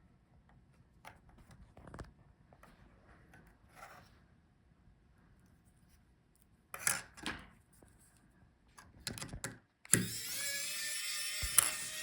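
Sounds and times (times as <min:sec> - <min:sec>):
small parts clicking and tapping: 0:09.1 - 0:12.0.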